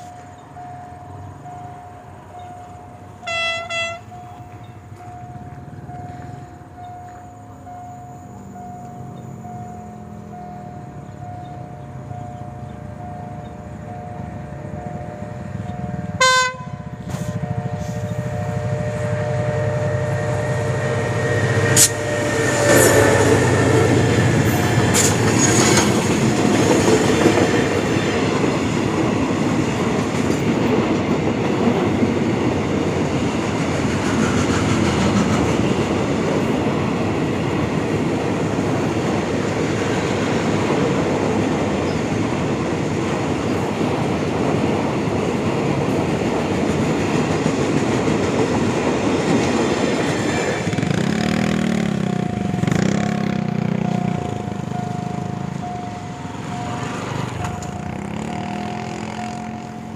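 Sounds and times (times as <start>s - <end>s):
train horn: 3.2s - 4.2s, 16.1s - 24.6s
train wheels clattering over rails: 20.7s - 59.6s.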